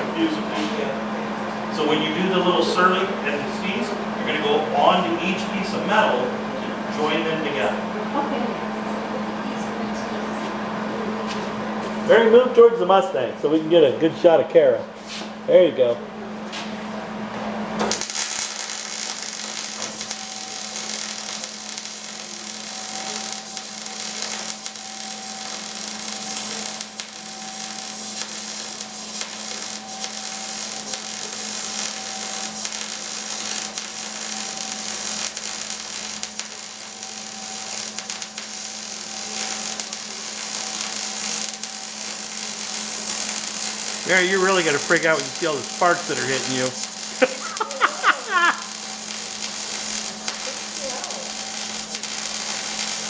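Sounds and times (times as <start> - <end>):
electrical hum: 0.0 - 53.0
welding arc crackling sizzle: 17.8 - 53.0.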